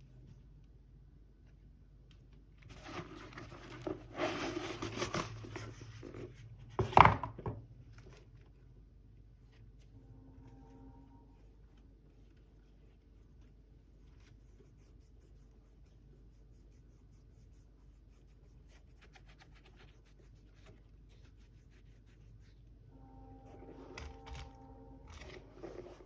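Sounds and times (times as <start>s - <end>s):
scratching and rustling of handling: 0.0s - 26.0s.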